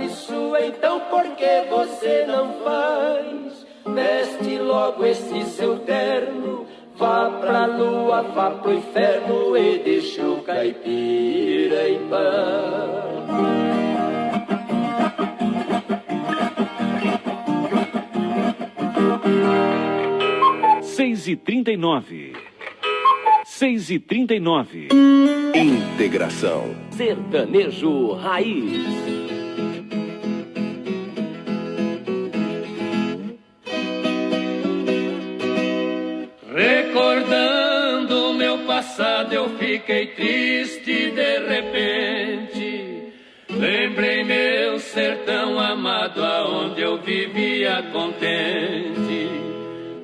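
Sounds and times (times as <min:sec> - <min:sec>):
acoustic guitars strumming: 0:11.6 - 0:21.0, 0:25.0 - 0:37.5.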